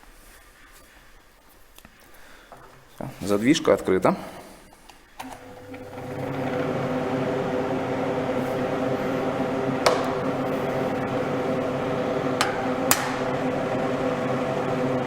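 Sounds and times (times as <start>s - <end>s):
duct fan motor hum: 5.2s - 15.0s.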